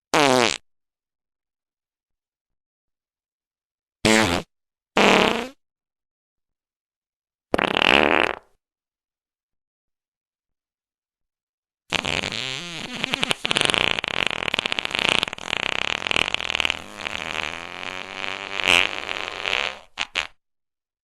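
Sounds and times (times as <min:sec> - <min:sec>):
long fluttering fart: 0:00.1 - 0:00.6, 0:04.0 - 0:05.6, 0:07.5 - 0:08.6, 0:11.9 - 0:20.4.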